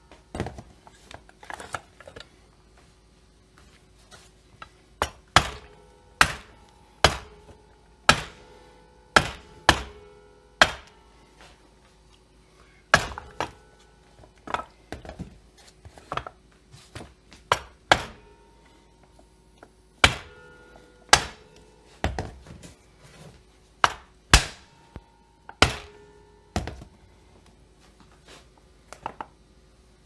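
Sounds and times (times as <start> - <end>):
metallic ring: 5.5 - 14.8, 18.0 - 19.6, 20.2 - 23.3, 24.6 - 27.3.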